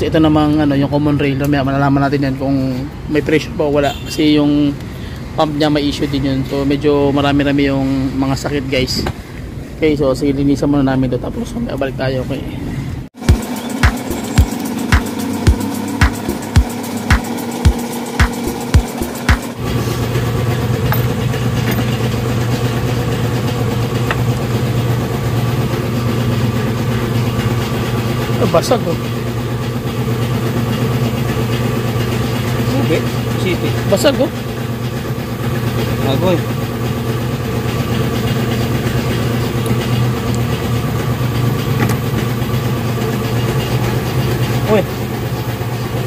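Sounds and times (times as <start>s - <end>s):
engine idling: 13.2s - 46.0s.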